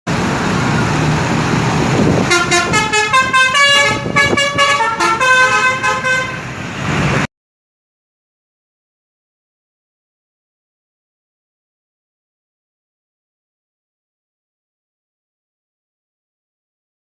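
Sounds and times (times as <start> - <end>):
steady rumble: 0.1 - 6.3
musical bus horn tune: 2.2 - 6.6.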